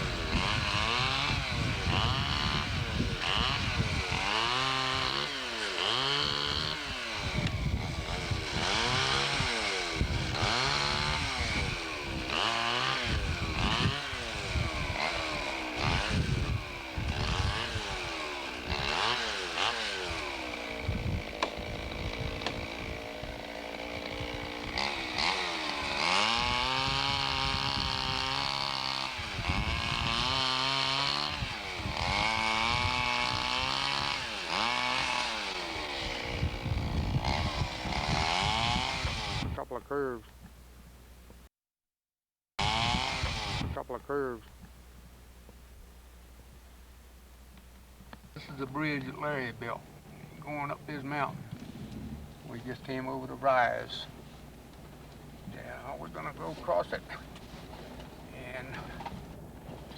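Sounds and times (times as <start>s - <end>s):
chainsaw revving: 0.0s - 39.6s, 42.6s - 44.5s, 48.3s - 59.9s.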